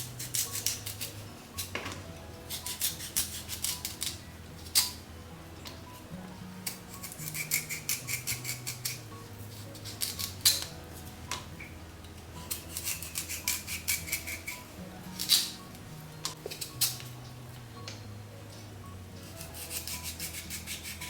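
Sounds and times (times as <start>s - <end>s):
knife slicing sweet potato: 0.0s - 5.0s, 6.6s - 10.7s, 12.4s - 15.6s, 19.3s - 21.0s
faint background music: 0.0s - 21.0s.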